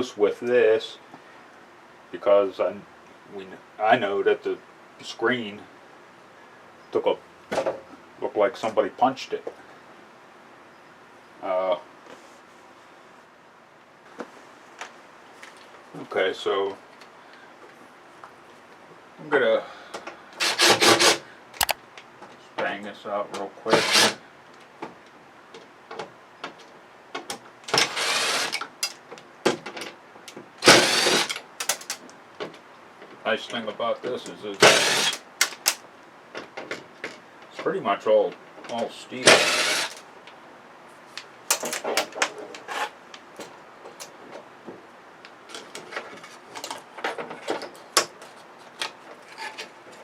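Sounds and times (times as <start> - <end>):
clicks and knocks of parts: 21.6 - 21.8, 28.5 - 33.2, 35.1 - 37.2, 41.2 - 42.8
power drill running in bursts: 27.8 - 28.6, 30.6 - 31.4, 34.6 - 35.2, 39.2 - 40.0
clatter of parts being handled: 31.3 - 32.1.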